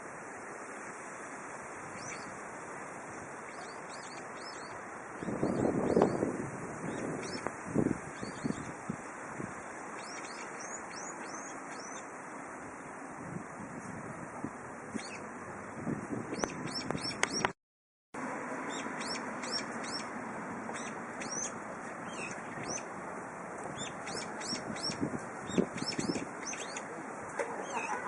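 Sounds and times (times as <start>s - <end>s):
songbirds chirping: 1.8s - 13.0s, 14.9s - 15.5s, 18.5s - 28.0s
wind rushing: 5.2s - 9.6s, 13.1s - 17.5s.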